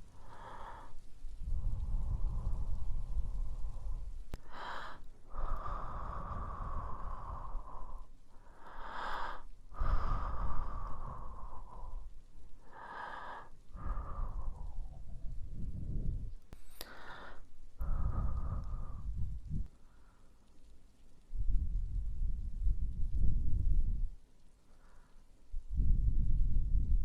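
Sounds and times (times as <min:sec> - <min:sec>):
person inhaling: 0:00.2 - 0:15.2, 0:16.5 - 0:19.2.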